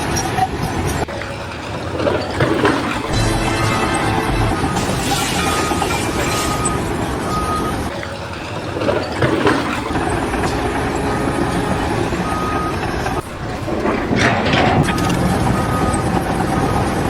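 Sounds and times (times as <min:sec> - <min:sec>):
engine running: 0:03.1 - 0:07.9, 0:09.8 - 0:17.0
vehicle reversing alarm beeps: 0:03.1 - 0:08.0, 0:09.9 - 0:17.0.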